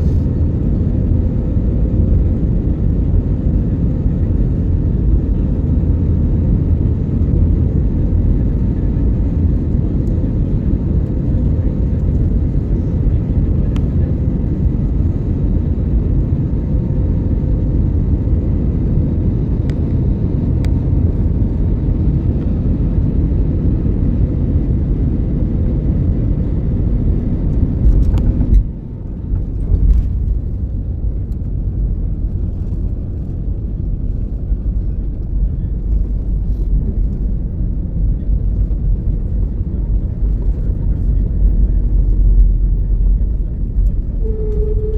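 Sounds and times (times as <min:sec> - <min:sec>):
jet engine and airflow rumble: 0:00.0 - 0:44.9
faint steady whine: 0:27.8 - 0:44.9.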